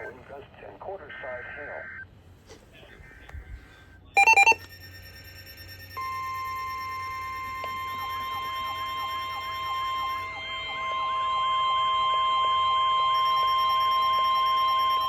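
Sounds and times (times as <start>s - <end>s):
steady high alarm tone: 4.2s - 15.0s.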